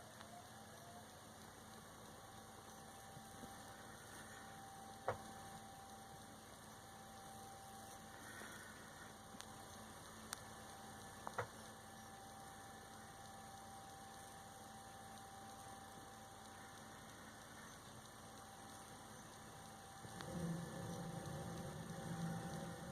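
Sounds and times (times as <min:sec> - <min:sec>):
low hum with faint hiss: 0:00.0 - 0:22.9
small clicks: 0:07.2 - 0:22.9.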